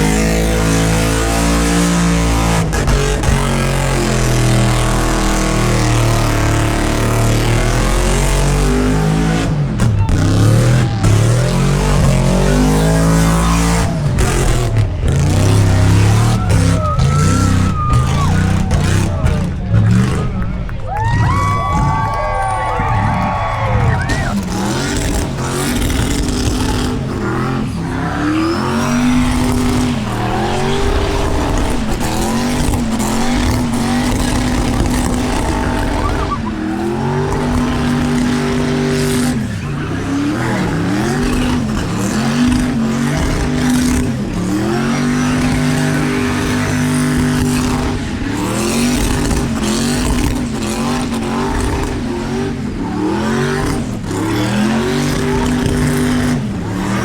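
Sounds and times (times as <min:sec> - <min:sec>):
engine revving hard: 0:00.0 - 0:57.0
spinning tyres hissing: 0:24.2 - 0:54.4.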